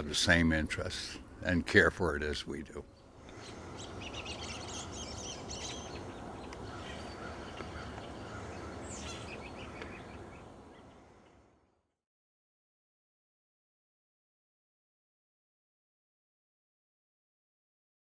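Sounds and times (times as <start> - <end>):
birds chirping: 0.0 - 11.7
background hiss: 0.0 - 11.8.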